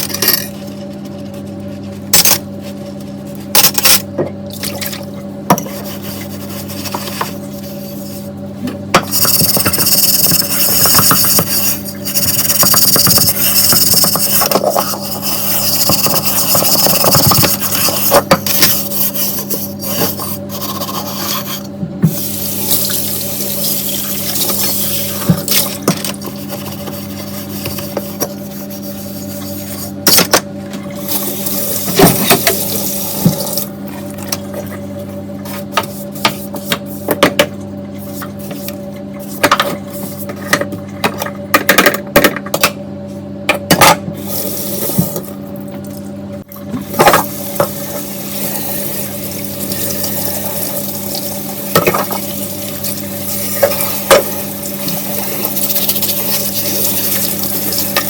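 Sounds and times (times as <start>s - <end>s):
dishes being scrubbed: 5.5s - 8.3s, 9.0s - 30.0s, 46.9s - 58.0s
tap water running: 22.1s - 28.4s, 46.8s - 58.0s.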